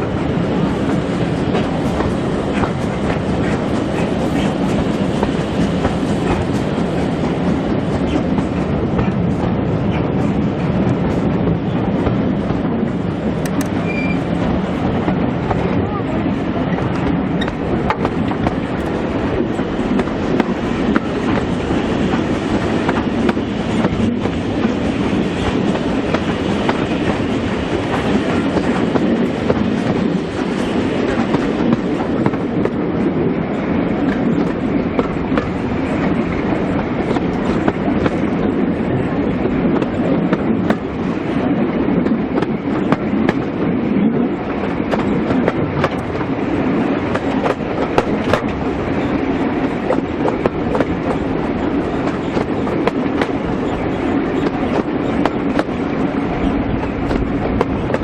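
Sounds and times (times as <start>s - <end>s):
train rumble: 0.0s - 58.0s
wheels clicking over rail joints: 13.4s - 14.2s, 16.6s - 32.8s, 44.5s - 58.0s.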